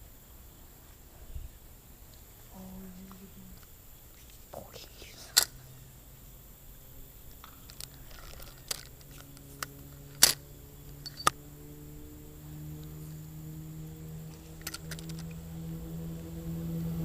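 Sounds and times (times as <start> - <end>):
low steady hum: 0.0 - 17.0
sharp clicks and knocks: 7.3 - 11.4, 14.3 - 15.4.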